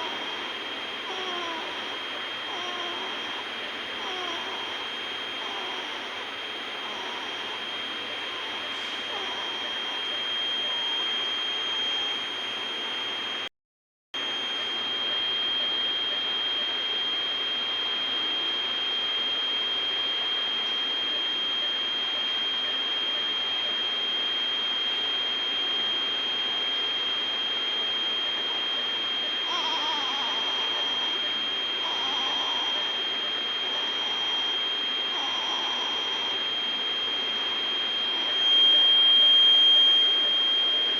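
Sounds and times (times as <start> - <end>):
high-pitched whine: 0.0 - 13.4, 21.9 - 40.9.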